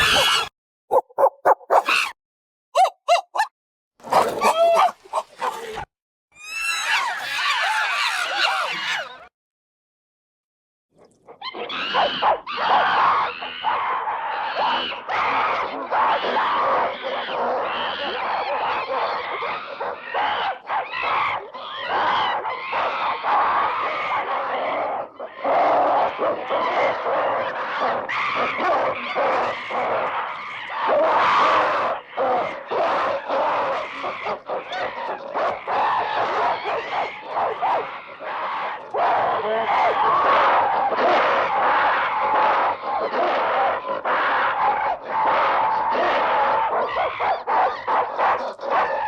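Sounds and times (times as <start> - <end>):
ape screams and barks: 0.0 - 2.2, 2.8 - 9.2, 25.4 - 49.0
ape-like creature calls: 0.0 - 2.2, 2.8 - 3.5, 4.1 - 5.9.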